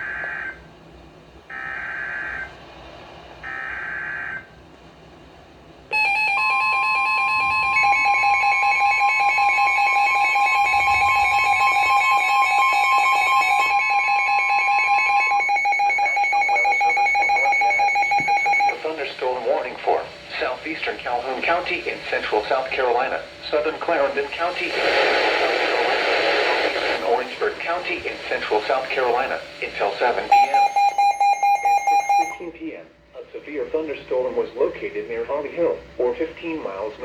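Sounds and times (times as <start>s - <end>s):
steady warning alarm tone: 1.5s - 2.6s, 5.9s - 24.7s, 26.7s - 37.0s
screeching data tones: 5.9s - 19.4s, 28.5s - 32.6s.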